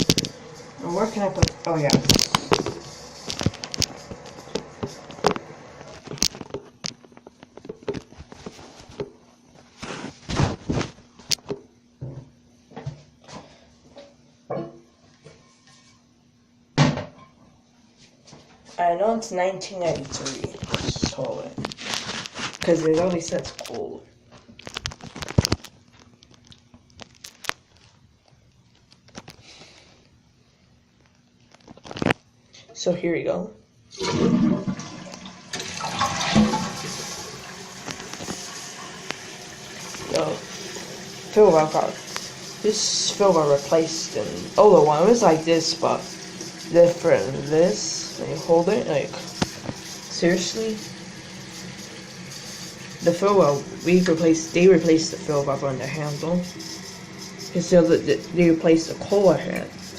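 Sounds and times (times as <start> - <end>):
rustling scrapes: 8.1 - 9.0, 9.6 - 11.0, 21.7 - 22.8.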